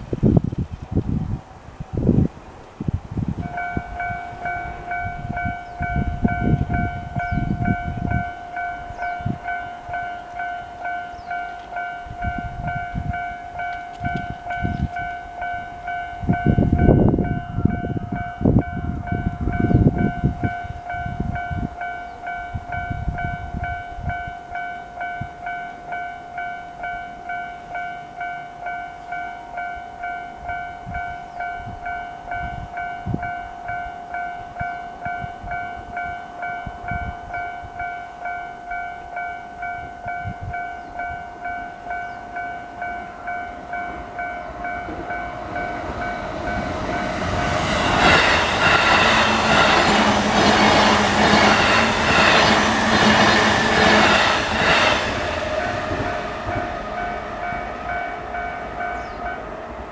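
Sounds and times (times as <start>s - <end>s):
level-crossing bell ringing: 3.5s - 53.2s
loud low rumble: 44.5s - 59.9s.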